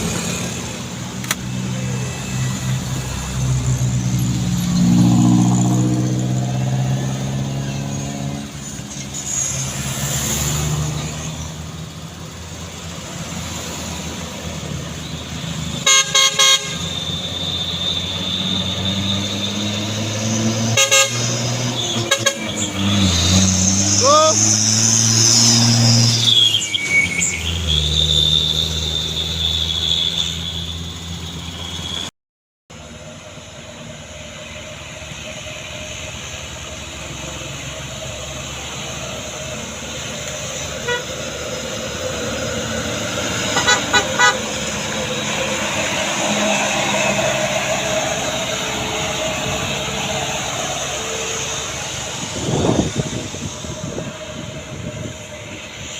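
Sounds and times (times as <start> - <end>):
engine and road drone: 0.0 - 32.1, 32.7 - 55.9
vehicle horn tooting: 15.8 - 18.6, 20.7 - 22.6, 40.8 - 41.2, 43.5 - 44.6.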